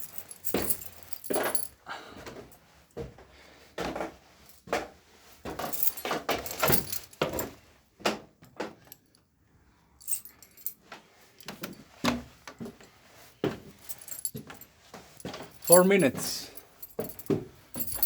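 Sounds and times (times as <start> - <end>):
keys jangling: 0.0 - 1.8, 5.6 - 7.6, 10.0 - 10.8, 13.7 - 14.6, 15.2 - 18.0.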